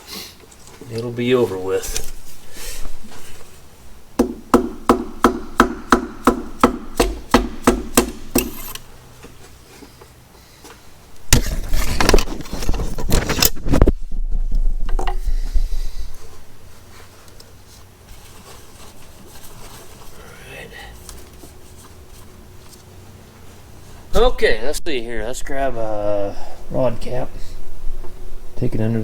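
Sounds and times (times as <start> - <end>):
quick hammer taps: 4.2 - 8.8.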